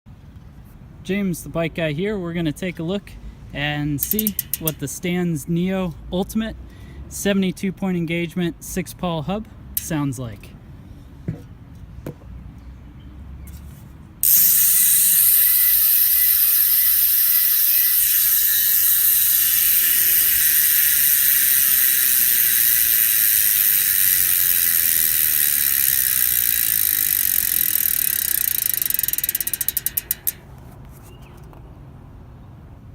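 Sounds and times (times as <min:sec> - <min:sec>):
bicycle hub ratchet buzzing: 0:03.9 - 0:05.0, 0:09.8 - 0:10.0, 0:14.2 - 0:30.6.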